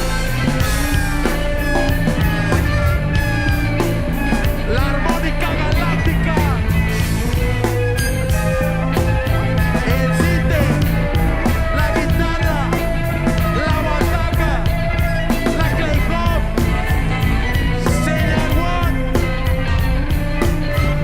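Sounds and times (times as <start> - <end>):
guitar lines bending in pitch: 0.0 - 21.0
heavy bass: 0.0 - 21.0
steady drum beat: 0.0 - 21.0.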